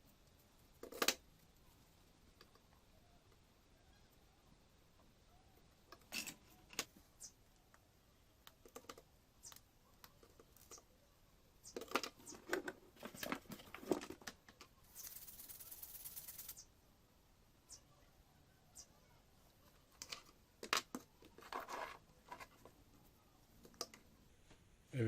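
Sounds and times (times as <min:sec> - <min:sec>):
steady hiss: 0:14.8 - 0:16.9
hands handling circuit board and tools: 0:19.7 - 0:22.8.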